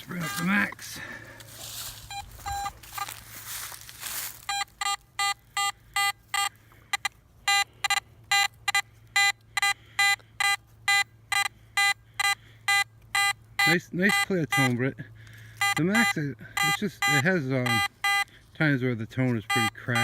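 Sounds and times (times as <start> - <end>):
rustling: 0.0 - 4.8
metal detector beeping: 0.0 - 18.4, 19.1 - 20.0.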